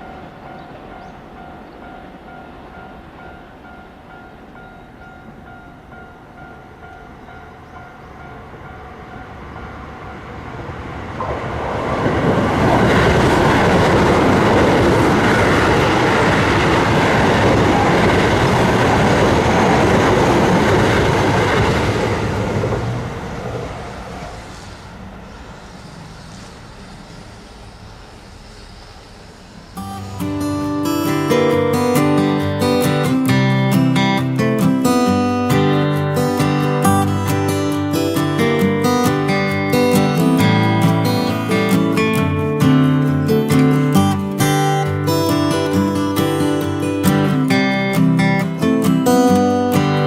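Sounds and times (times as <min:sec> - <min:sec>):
level crossing warning bell: 0:00.0 - 0:10.7, 0:29.8 - 0:50.0
electric train passing: 0:00.0 - 0:50.0.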